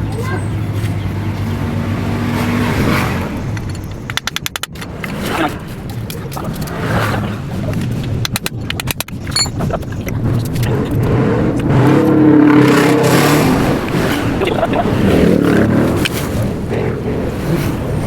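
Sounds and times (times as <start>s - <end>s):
motorcycle engine revving: 0.0s - 9.4s, 10.2s - 18.0s
sharp clicks: 3.5s - 6.8s, 7.7s - 11.8s.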